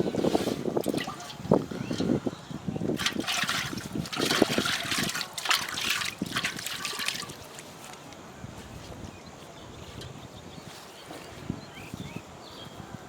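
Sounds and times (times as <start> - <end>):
water splashing and trickling: 0.0 - 8.0.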